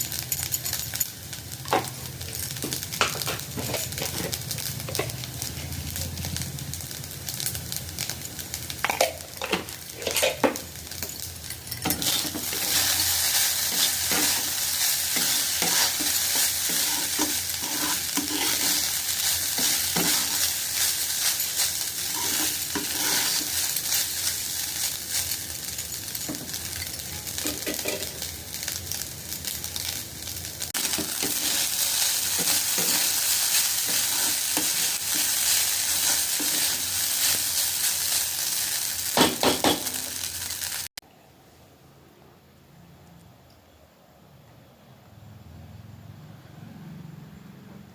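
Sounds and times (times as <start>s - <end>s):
fried rice sizzling in a pan: 0.0s - 41.0s
spatula scraping a pan: 11.7s - 25.3s, 30.8s - 37.6s.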